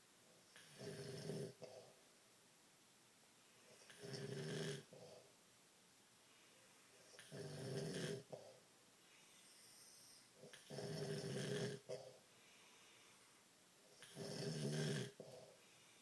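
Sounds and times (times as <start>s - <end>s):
loud snoring: 0.6s - 1.6s, 3.9s - 5.0s, 7.2s - 8.4s, 10.4s - 12.1s, 14.0s - 15.4s
soft breathing: 6.2s - 7.2s, 8.3s - 10.6s, 11.9s - 13.6s, 15.1s - 16.0s.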